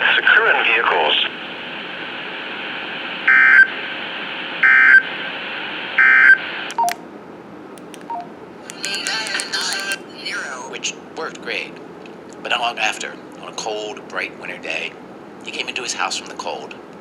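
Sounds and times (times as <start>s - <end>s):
program audio: 7.8s - 10.5s
broadcast hiss: 7.8s - 11.0s.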